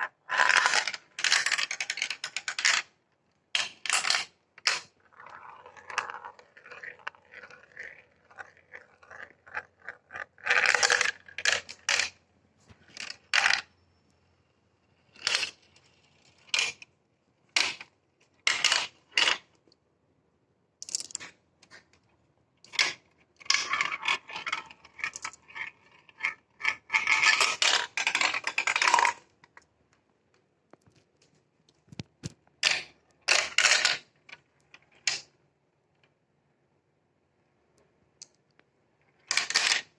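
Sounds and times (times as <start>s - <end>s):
marbles rattling down plastic track: 0.2s - 2.9s, 3.6s - 12.2s, 12.9s - 13.7s, 15.1s - 16.9s, 17.6s - 19.5s, 22.7s - 29.2s, 32.6s - 34.1s, 39.2s - 39.9s.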